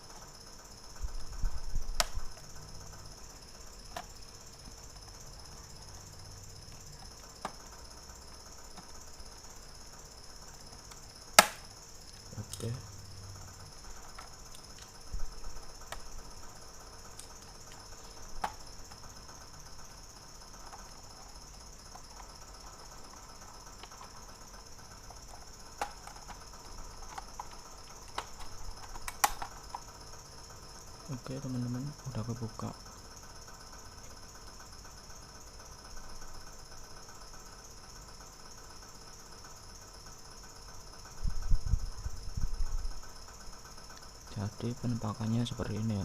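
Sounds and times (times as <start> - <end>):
faint steady hiss: 0.0 - 46.0
plastic case clicks and snaps: 10.9 - 12.6, 18.4 - 18.6, 27.0 - 29.8.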